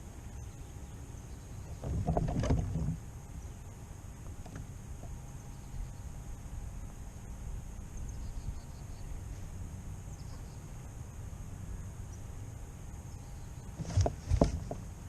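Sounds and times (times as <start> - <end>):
wind rumble on microphone: 1.5 - 3.4, 13.6 - 15.0
gear knocking against kayak: 1.8 - 3.0, 13.8 - 15.0.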